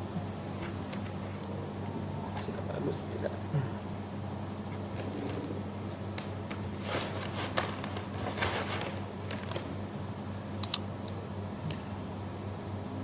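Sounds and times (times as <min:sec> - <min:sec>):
rustling handling noise: 0:06.4 - 0:09.7.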